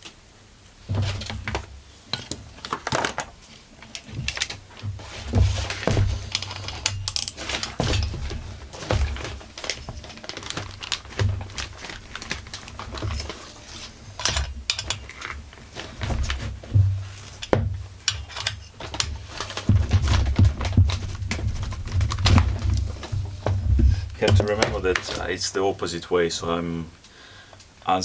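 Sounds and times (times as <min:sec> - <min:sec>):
metal wrenches clinking: 0:06.3 - 0:13.5, 0:14.1 - 0:16.4, 0:17.3 - 0:19.7
low handling thumps: 0:15.4 - 0:18.1, 0:18.8 - 0:25.5.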